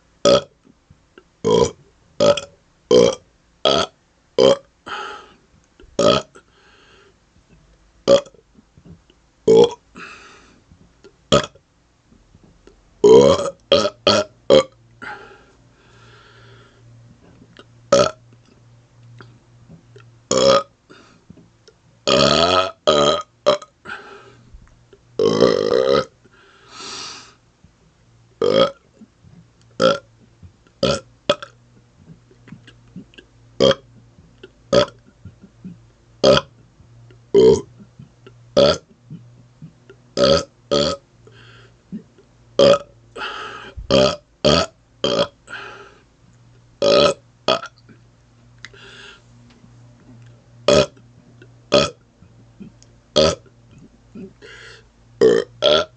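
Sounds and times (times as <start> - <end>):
man burping: 0.2 - 0.5, 1.4 - 5.4, 6.0 - 6.5, 8.1 - 8.4, 9.5 - 10.3, 11.3 - 11.6, 13.0 - 15.4, 17.9 - 18.2, 20.3 - 20.7, 22.0 - 24.2, 25.2 - 26.2, 28.4 - 29.1, 29.8 - 30.1, 30.8 - 33.8, 34.4 - 36.6, 37.3 - 41.0, 41.9 - 45.8, 46.8 - 47.8, 50.7 - 51.0, 51.7 - 52.0, 52.6 - 55.9.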